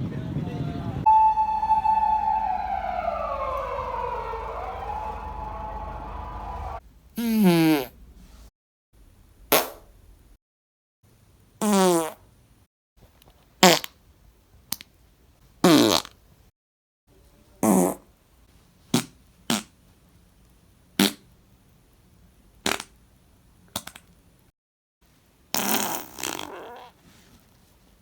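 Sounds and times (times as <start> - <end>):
human farts: 7.2 - 8.0, 11.6 - 12.2, 13.6 - 13.9, 15.6 - 16.2, 17.6 - 18.1, 18.9 - 19.7, 21.0 - 21.2, 22.6 - 22.9, 25.5 - 27.0.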